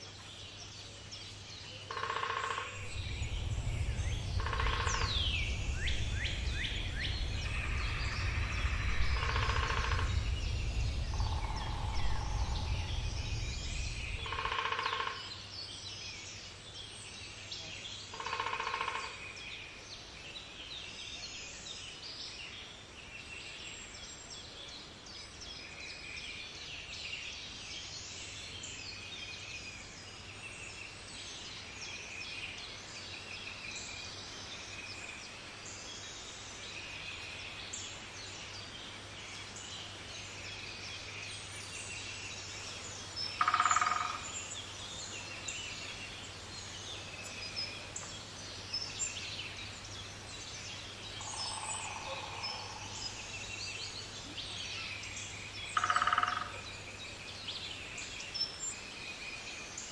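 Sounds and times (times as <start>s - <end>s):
birds singing: 0.0s - 59.9s
louder lower bird calls: 1.9s - 15.4s, 43.4s - 44.3s
steady low hum: 2.7s - 15.4s.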